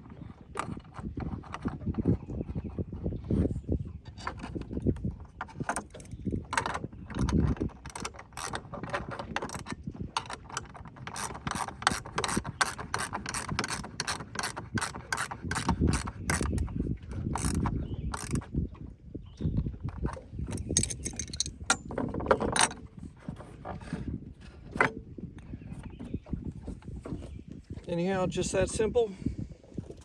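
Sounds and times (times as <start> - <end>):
hand tool ratcheting clicks: 11.1 - 16.7, 17.4 - 18.4, 20.5 - 21.8.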